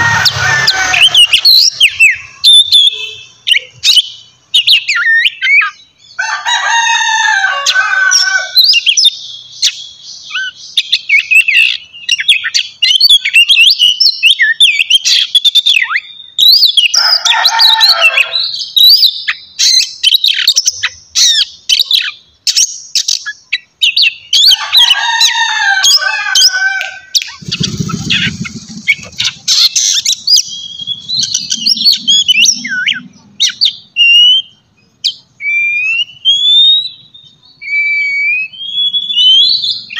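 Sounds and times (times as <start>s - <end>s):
bird singing chirps and whistles: 0.0s - 6.2s, 8.1s - 24.9s, 25.9s - 39.9s
harsh rasping bird call: 0.0s - 16.2s, 24.0s - 34.7s.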